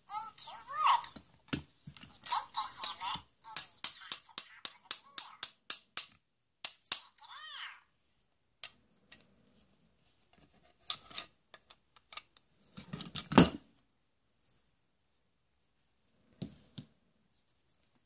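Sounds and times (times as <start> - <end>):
plastic toy tools clicking and knocking: 1.0 - 7.2.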